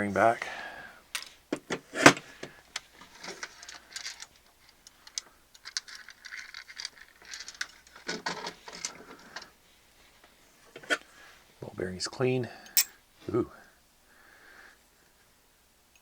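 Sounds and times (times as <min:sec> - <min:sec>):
metal parts rubbing and scraping: 0:05.6 - 0:09.0.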